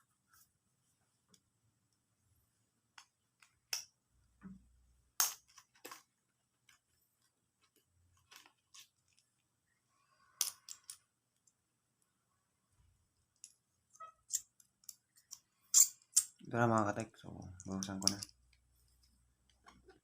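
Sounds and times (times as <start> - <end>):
light clicks and taps: 17.4 - 20.0.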